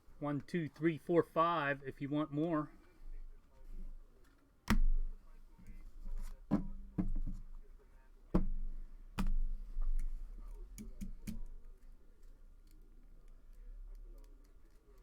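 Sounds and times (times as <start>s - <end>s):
cards knocking and clicking: 8.4s - 11.6s.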